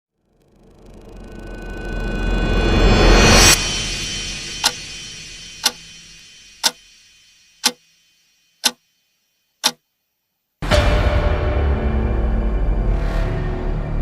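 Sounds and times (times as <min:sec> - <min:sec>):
clock-like ticking: 0:04.6 - 0:04.8, 0:05.6 - 0:05.8.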